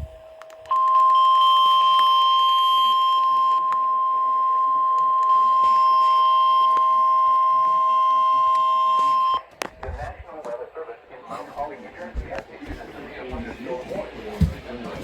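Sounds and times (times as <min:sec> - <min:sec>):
faint low steady whistle: 0:00.0 - 0:09.4
loud steady alarm tone: 0:00.0 - 0:09.5.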